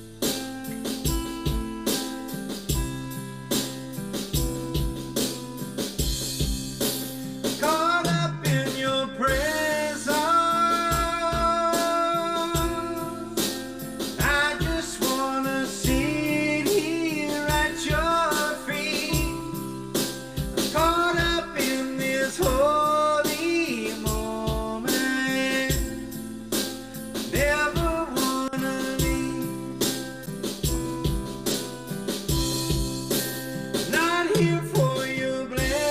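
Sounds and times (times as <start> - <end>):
band with drums: 0.0 - 35.9
person singing worship song: 7.6 - 13.6, 14.2 - 19.6, 20.7 - 26.1, 33.9 - 35.9.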